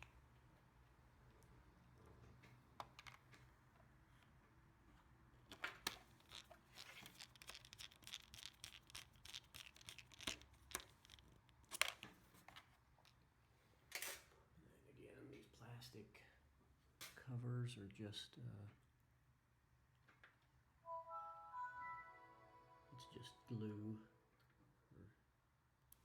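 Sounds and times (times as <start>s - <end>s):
small tools clicking and scraping: 5.5s - 13.2s.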